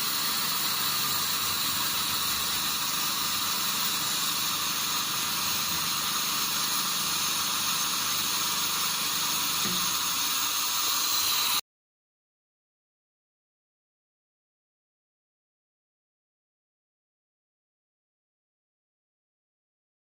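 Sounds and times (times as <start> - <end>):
steady hiss: 0.0 - 11.6.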